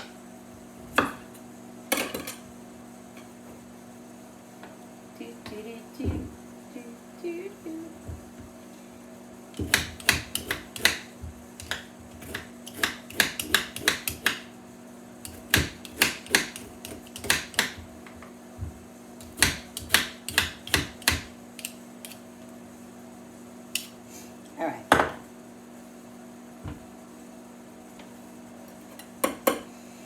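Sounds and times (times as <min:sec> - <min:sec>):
microwave oven humming: 0:00.0 - 0:30.0
knife cutting sweet potato: 0:11.6 - 0:14.4.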